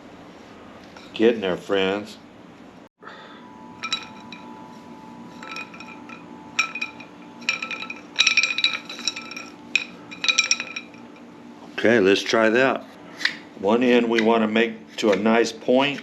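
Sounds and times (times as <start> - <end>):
light metallic ring: 3.6 - 11.3.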